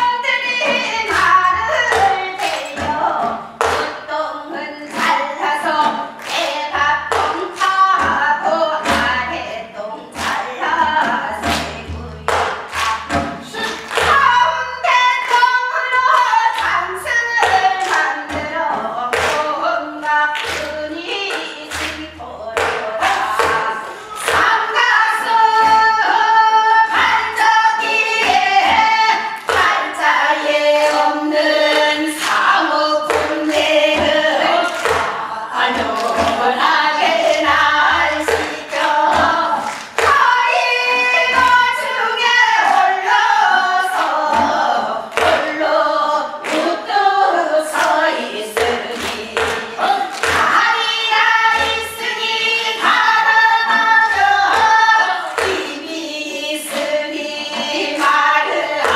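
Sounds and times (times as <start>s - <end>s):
group singing folk song in unison: 0.0s - 58.9s
sharp percussive strokes: 0.0s - 58.9s.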